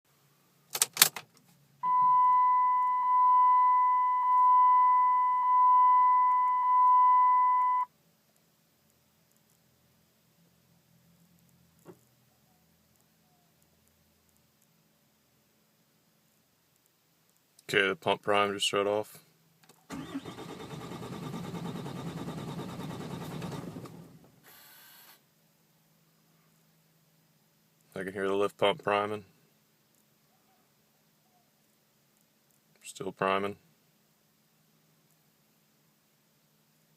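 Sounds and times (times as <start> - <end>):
sharp clicks: 0.7 - 1.4
dashboard warning chime beeping: 1.8 - 7.9
diesel engine starter cranking: 19.9 - 24.2
brief hiss: 24.4 - 25.3.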